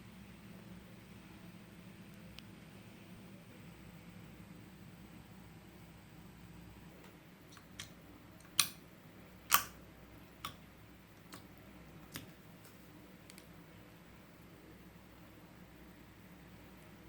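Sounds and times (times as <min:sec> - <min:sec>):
sharp clicks: 0:09.5 - 0:09.8.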